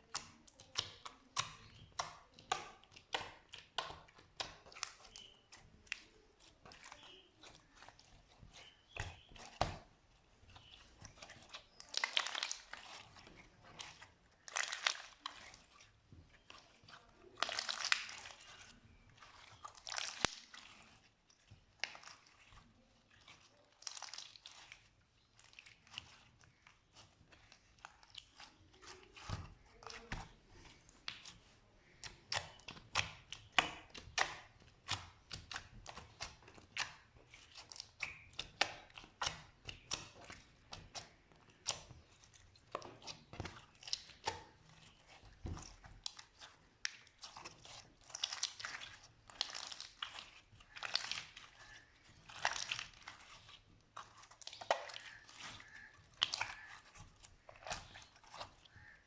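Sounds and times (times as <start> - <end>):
slime crackling and popping: 10.6 - 15.8, 16.4 - 30.4, 31.0 - 59.0.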